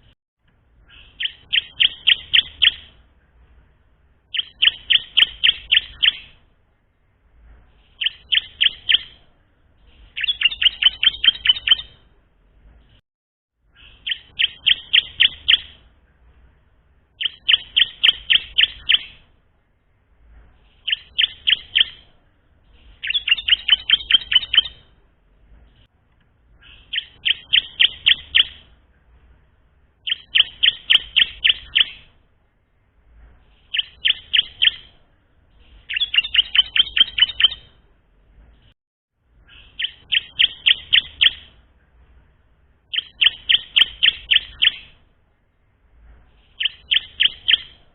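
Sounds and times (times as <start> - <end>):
bird singing sharp chipping notes: 0.9 - 3.0, 4.3 - 6.4, 7.9 - 9.2, 10.2 - 12.0, 13.8 - 15.8, 17.2 - 19.2, 20.7 - 22.1, 22.9 - 24.8, 26.6 - 28.7, 30.0 - 32.1, 33.7 - 35.0, 35.6 - 37.7, 42.9 - 45.0, 46.5 - 47.8.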